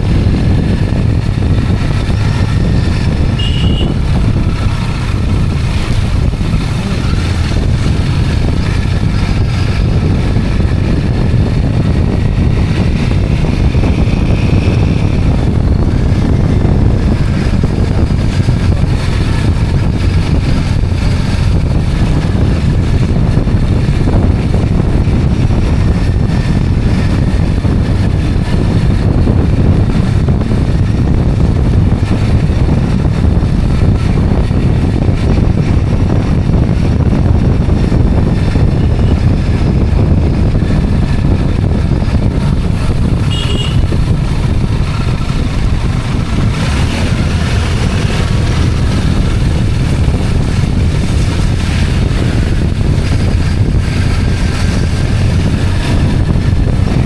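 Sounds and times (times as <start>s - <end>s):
motorcycle engine hum: 0.0s - 57.0s
wind rushing over microphone: 0.0s - 57.0s
brief high tone: 3.4s - 4.0s.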